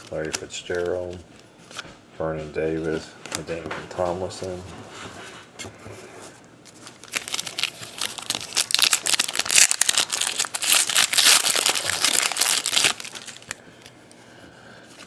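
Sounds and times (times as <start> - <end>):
foil wrapper crinkling: 6.7 - 13.9.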